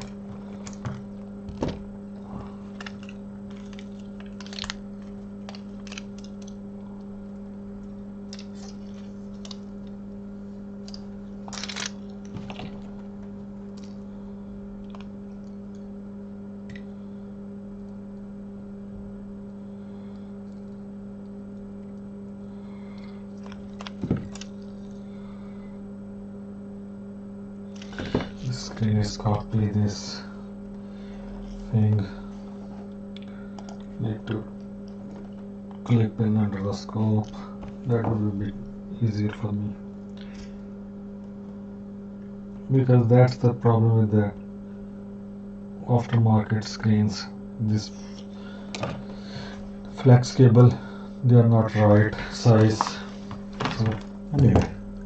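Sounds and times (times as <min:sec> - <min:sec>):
steady electrical hum: 0:00.0 - 0:55.0
small parts and tools clicking: 0:02.7 - 0:06.6, 0:10.8 - 0:12.9.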